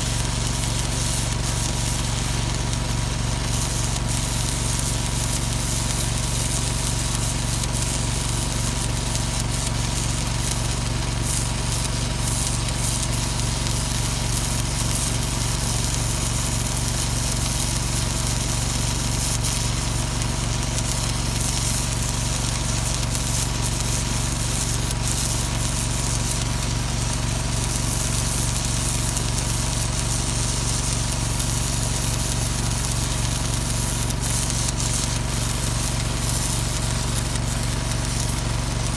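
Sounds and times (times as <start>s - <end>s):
welding arc crackling and hissing: 0.0s - 38.9s.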